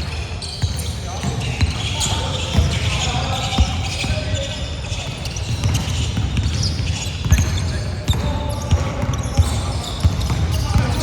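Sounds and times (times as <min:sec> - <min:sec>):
sneakers squeaking on floor: 0:00.0 - 0:11.0
basketball bouncing: 0:05.5 - 0:11.0.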